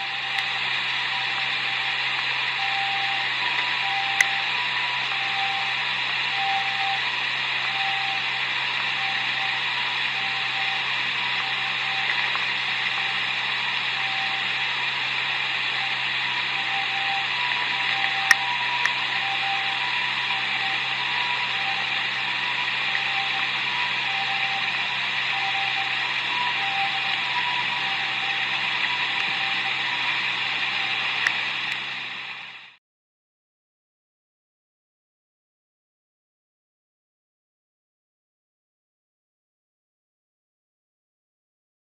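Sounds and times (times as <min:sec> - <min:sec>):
distant two-tone ambulance siren: 0:00.0 - 0:32.7
loud steady hiss: 0:00.0 - 0:32.8.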